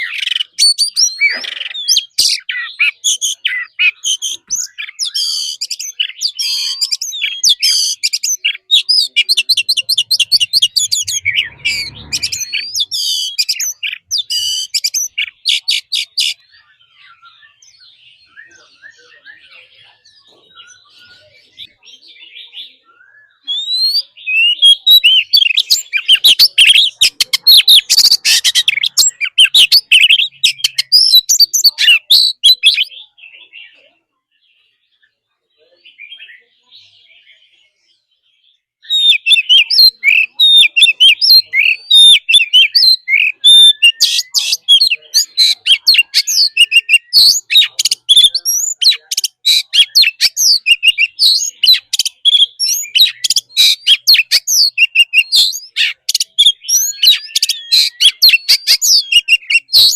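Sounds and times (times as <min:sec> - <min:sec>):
bird singing whistles and chatter: 0:00.0 - 0:59.9.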